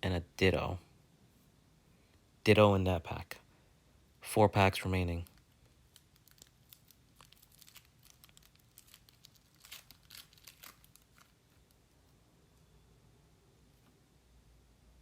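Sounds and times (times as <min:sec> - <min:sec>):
wrapper crinkling and tearing: 0:05.2 - 0:11.8.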